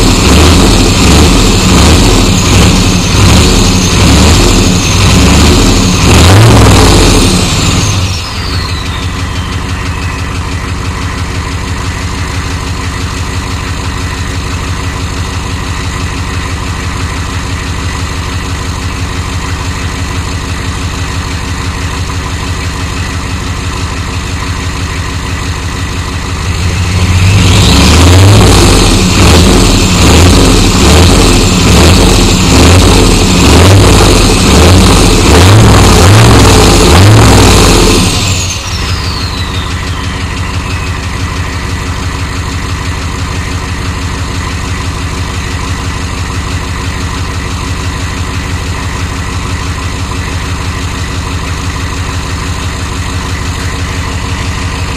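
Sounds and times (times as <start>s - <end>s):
diesel engine revving and idling: 0.0s - 54.9s
turbo whistle: 7.6s - 11.3s, 38.1s - 42.0s.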